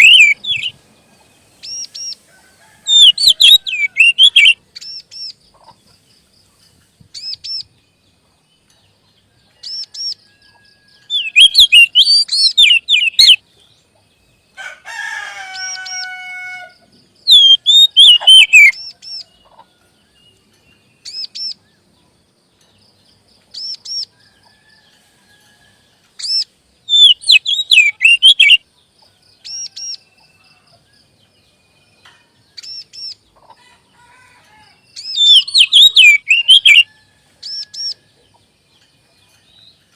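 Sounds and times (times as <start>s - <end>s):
bird singing whistled phrases: 0.0s - 0.7s, 2.9s - 4.6s, 11.1s - 13.4s, 17.3s - 18.9s, 26.9s - 28.6s, 35.0s - 36.9s
harsh rasping bird call: 0.0s - 0.7s, 1.6s - 4.6s, 14.6s - 18.9s, 26.9s - 28.6s, 35.0s - 37.8s.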